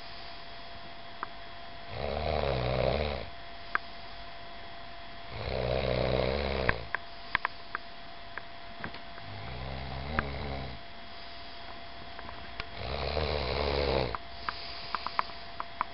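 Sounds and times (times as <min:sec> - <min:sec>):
person snoring: 0:01.9 - 0:03.3, 0:05.3 - 0:06.9, 0:09.2 - 0:10.8, 0:12.8 - 0:15.2.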